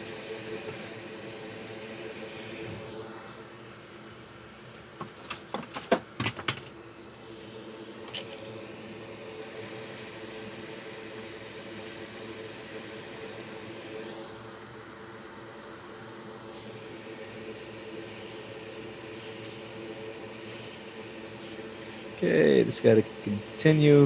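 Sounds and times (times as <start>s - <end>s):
hot air blower whirring: 0.0s - 24.0s.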